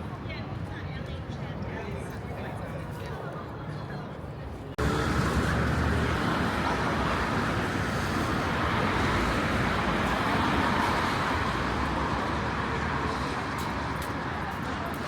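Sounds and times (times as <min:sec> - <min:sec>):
vehicle traffic rumble: 0:04.7 - 0:15.0.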